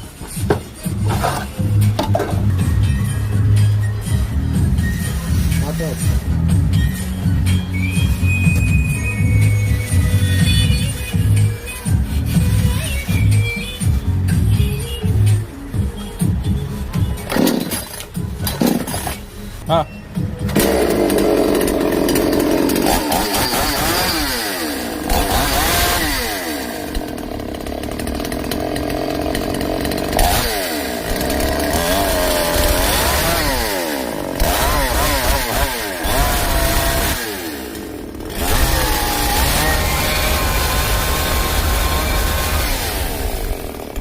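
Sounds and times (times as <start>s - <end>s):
chainsaw engine revving: 17.3s - 19.2s, 20.5s - 44.0s.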